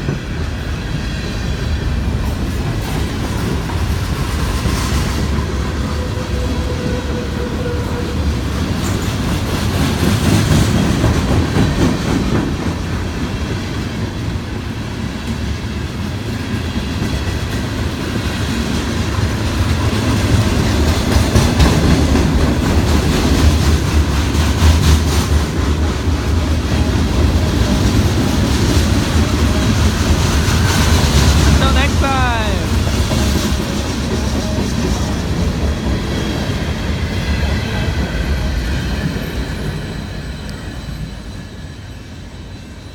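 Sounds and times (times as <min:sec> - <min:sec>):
train wheels clattering over rail joints: 0:08.6 - 0:14.4, 0:15.0 - 0:31.6.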